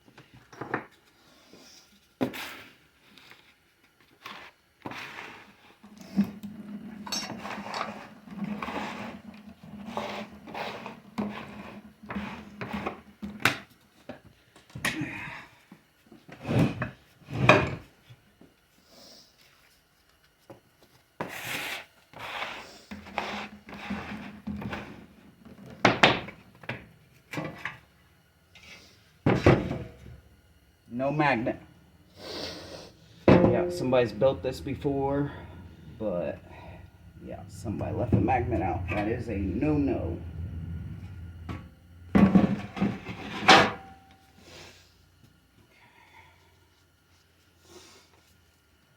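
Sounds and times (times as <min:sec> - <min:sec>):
metal parts knocking and scraping: 0:07.0 - 0:08.0, 0:33.2 - 0:34.5
low steady hum: 0:25.4 - 0:47.4.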